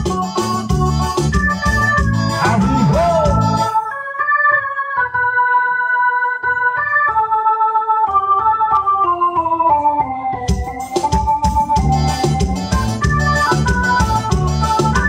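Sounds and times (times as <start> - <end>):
keyboard organ melody: 0.0 - 15.0
bass notes: 0.7 - 3.8, 11.6 - 15.0.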